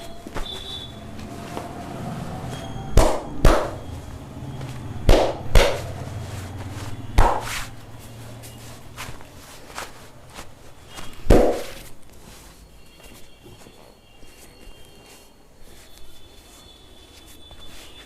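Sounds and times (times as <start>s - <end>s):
hands slapping body: 3.0s - 3.8s, 5.1s - 5.9s, 7.2s - 7.7s, 11.1s - 11.9s.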